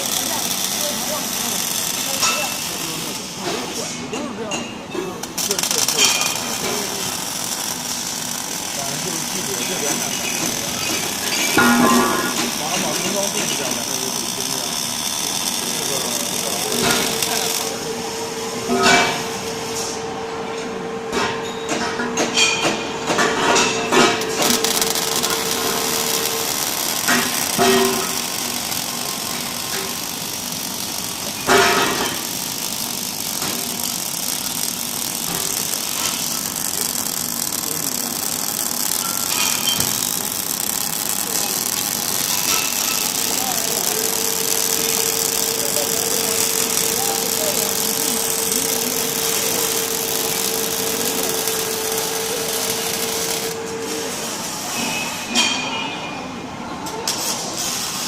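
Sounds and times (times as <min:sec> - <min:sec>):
short loud welding sound: 0:00.0 - 0:03.9, 0:05.2 - 0:17.8, 0:23.5 - 0:55.4, 0:57.1 - 0:58.0
robotic welding workshop noise: 0:00.0 - 0:58.0
machine hum: 0:05.4 - 0:21.1, 0:24.1 - 0:54.7.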